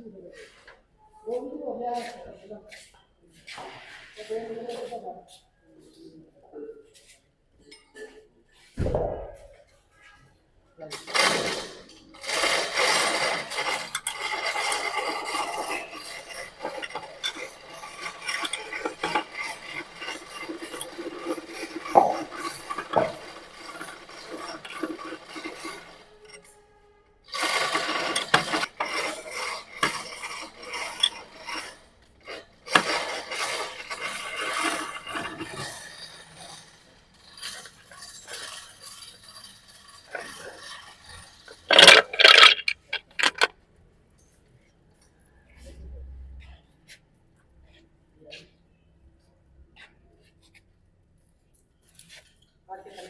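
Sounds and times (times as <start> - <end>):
tools rasping and scraping metal: 11.0 - 43.5
metal clinks and knocks: 12.9 - 26.5, 37.2 - 43.5.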